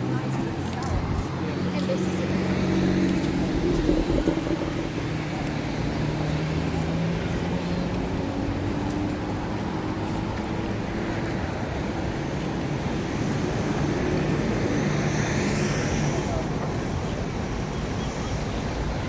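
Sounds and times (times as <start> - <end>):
vehicles passing: 0.0 - 19.0.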